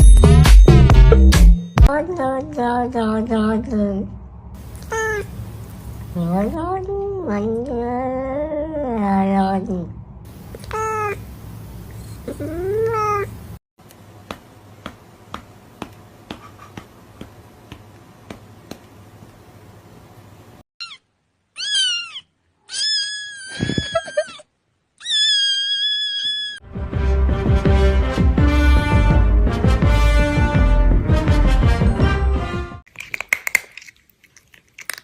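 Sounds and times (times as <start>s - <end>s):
cat meowing: 4.7s - 5.3s, 10.6s - 11.2s, 21.6s - 24.4s, 25.0s - 26.6s.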